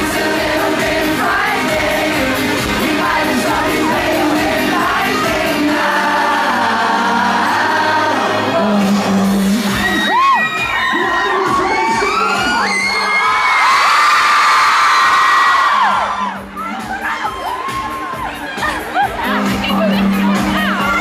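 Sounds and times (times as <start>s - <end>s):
male vocal group singing: 0.0s - 9.8s
live pop band: 0.0s - 13.3s
crowd shouting along: 9.7s - 19.4s.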